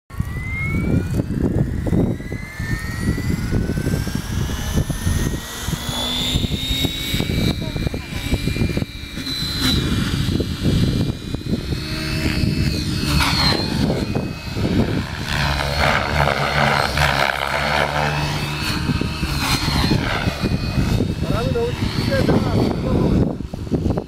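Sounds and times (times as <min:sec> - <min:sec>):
rc helicopter motor and rotor whine: 0:00.1 - 0:24.0
wind rumbling on microphone: 0:00.1 - 0:24.0.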